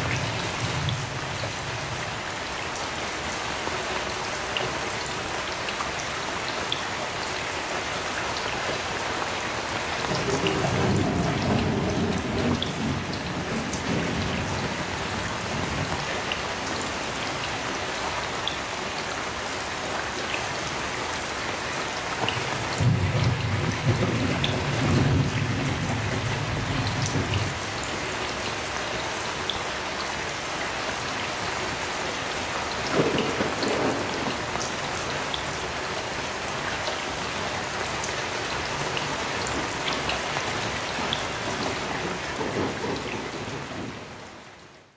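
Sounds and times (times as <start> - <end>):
heavy rain falling: 0.0 - 44.9
thunder rumbling: 10.0 - 16.1, 22.8 - 27.6, 32.9 - 34.5, 41.6 - 44.2.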